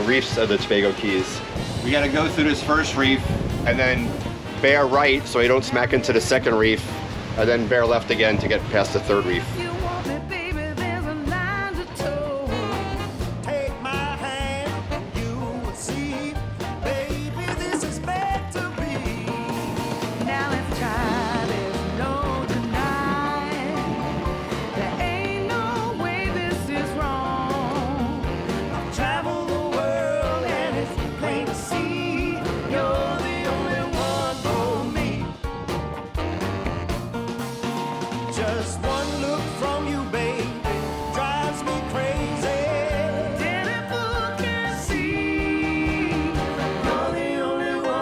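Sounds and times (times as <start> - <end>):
upbeat song with sung vocal: 9.0 - 35.8, 38.1 - 48.0.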